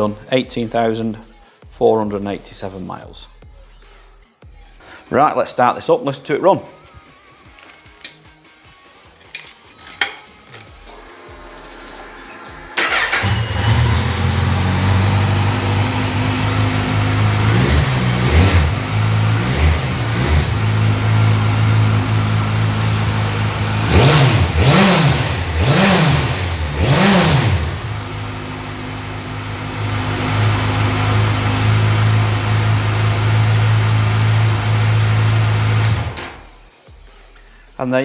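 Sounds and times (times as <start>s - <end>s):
motorcycle engine idling and revving: 10.6s - 36.7s.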